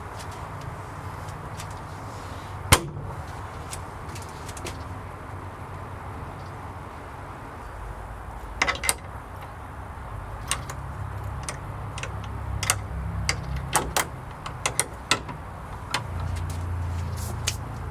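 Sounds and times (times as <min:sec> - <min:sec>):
steady low rumble: 0:00.0 - 0:17.9
metal gate latch clicking: 0:08.4 - 0:09.6, 0:10.4 - 0:16.5.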